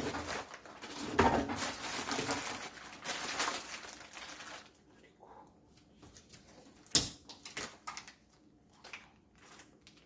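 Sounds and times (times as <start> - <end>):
food containers knocking and clattering: 0.0 - 2.5.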